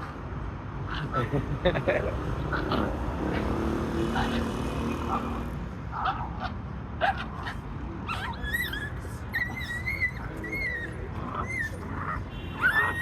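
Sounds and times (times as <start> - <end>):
puppy yipping: 6.0 - 13.0
puppy whining: 7.0 - 13.0.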